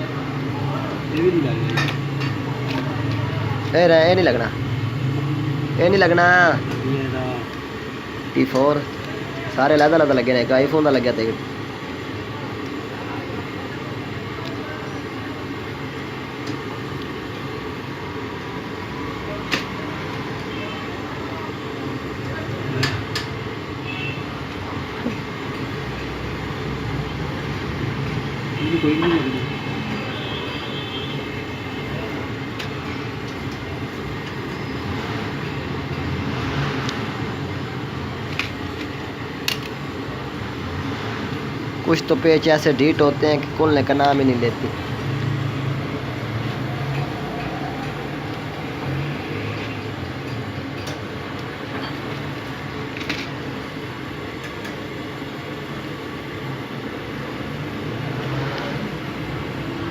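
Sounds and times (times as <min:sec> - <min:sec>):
steady background hum: 0:00.0 - 0:59.9.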